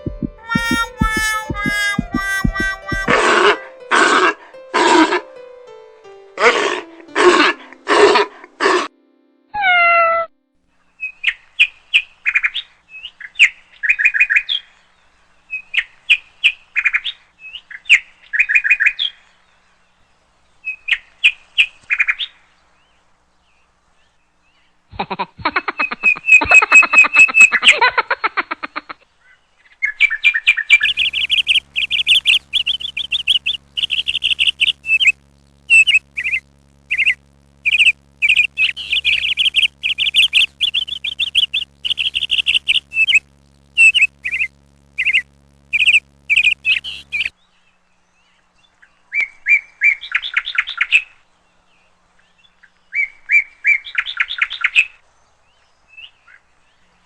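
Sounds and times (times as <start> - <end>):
rapid high bird chirps: 0.0 - 3.2, 30.7 - 47.3
bird calling harshly: 0.0 - 3.5.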